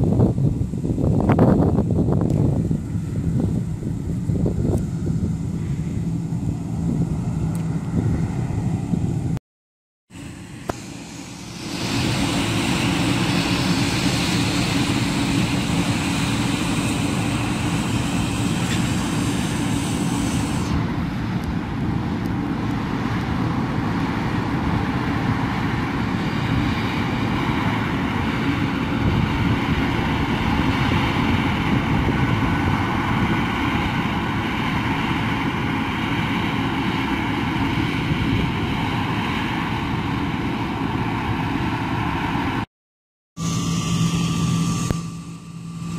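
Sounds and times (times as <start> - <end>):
diesel farm machinery running: 0.0 - 9.4, 10.1 - 42.7, 43.4 - 45.9
high hiss: 10.2 - 20.9.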